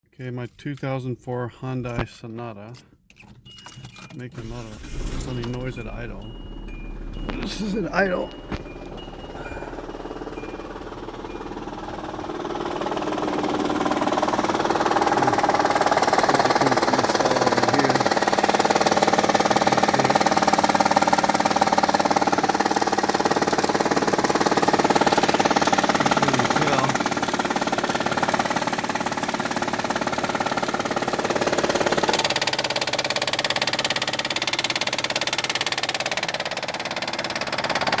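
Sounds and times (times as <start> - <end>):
car engine idling: 3.5 - 38.0.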